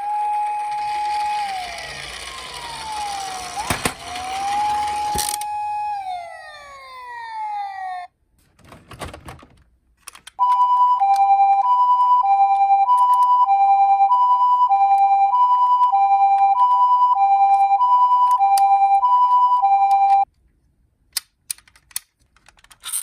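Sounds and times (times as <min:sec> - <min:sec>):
toy siren wailing: 0:00.0 - 0:08.1, 0:10.4 - 0:20.3
two-tone hi-lo siren: 0:00.0 - 0:08.1, 0:10.4 - 0:20.3.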